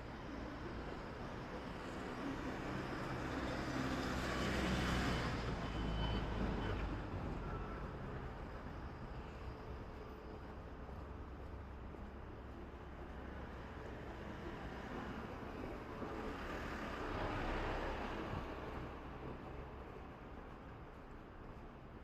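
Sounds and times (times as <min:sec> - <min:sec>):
road vehicle passing by: 0:12.5 - 0:20.4.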